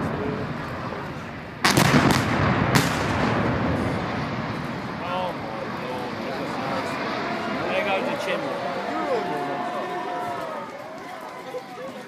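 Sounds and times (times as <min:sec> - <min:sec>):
explosive charges banging: 0:00.0 - 0:07.4
rolling rumble: 0:00.0 - 0:11.7.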